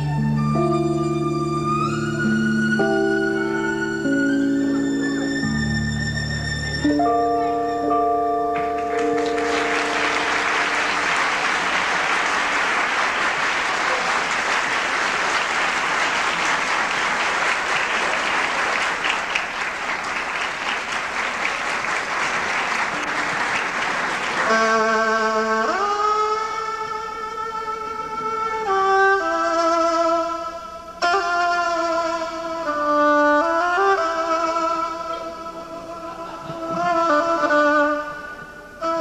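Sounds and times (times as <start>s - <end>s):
instrumental music: 0.0s - 13.9s, 22.7s - 39.0s
applause-like hissing noise: 9.0s - 24.9s.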